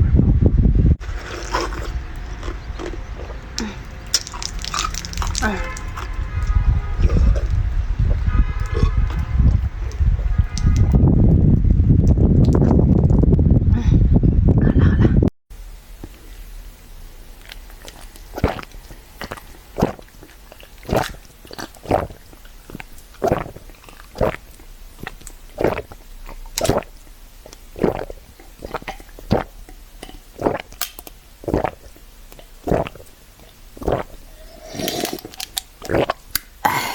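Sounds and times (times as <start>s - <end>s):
wet chewing smacks: 1.1s - 10.9s, 17.4s - 36.9s.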